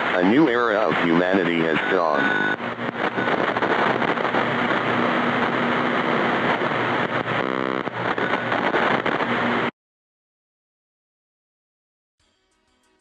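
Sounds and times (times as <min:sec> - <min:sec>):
broadcast static hiss: 0:00.0 - 0:09.7
buzzing tone: 0:00.0 - 0:09.7.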